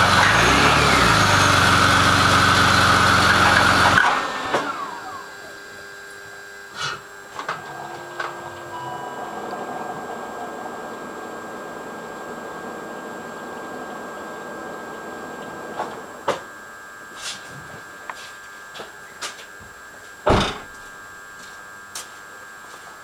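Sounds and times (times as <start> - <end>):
car engine running with rattle: 0.0 - 5.2
sharp knocks: 20.3 - 20.7.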